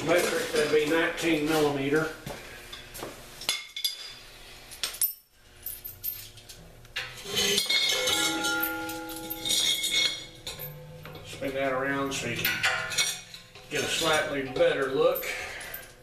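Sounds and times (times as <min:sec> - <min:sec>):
metal tools clinking: 0:04.8 - 0:16.0
ringing metallic clink: 0:07.2 - 0:14.1.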